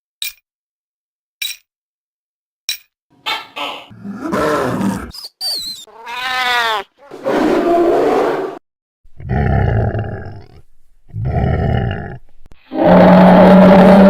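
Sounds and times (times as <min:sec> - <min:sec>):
dinosaur roars: 0:03.9 - 0:05.1, 0:07.1 - 0:08.6, 0:09.2 - 0:14.0.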